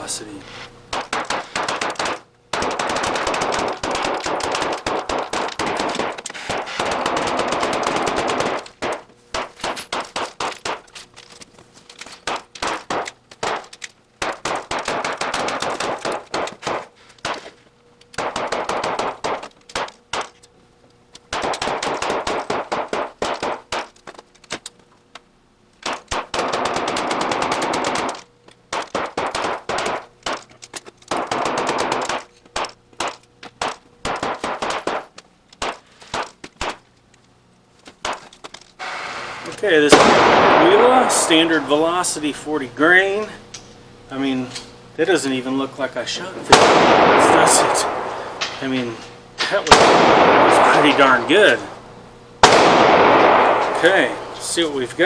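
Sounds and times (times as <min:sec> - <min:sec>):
pistol shots: 0:00.9 - 0:10.9, 0:12.2 - 0:17.5, 0:18.2 - 0:20.4, 0:21.3 - 0:23.9, 0:25.8 - 0:30.4, 0:31.1 - 0:36.8, 0:38.0 - 0:42.1, 0:46.5 - 0:48.7, 0:49.6 - 0:54.6.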